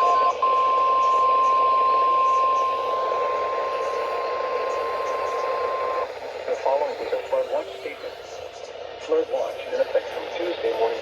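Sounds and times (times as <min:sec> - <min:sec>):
steady high alarm tone: 0:00.0 - 0:06.1
radio hiss: 0:00.0 - 0:11.0.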